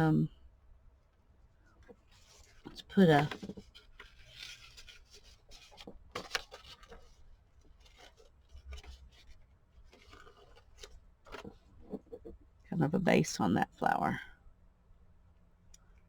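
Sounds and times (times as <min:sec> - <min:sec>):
paper rustling and tapping: 0:02.6 - 0:12.3.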